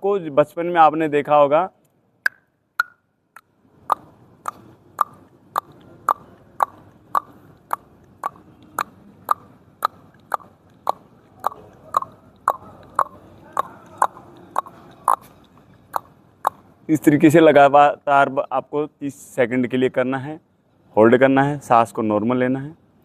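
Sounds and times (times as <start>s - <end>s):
tongue clicking: 2.3s - 16.7s.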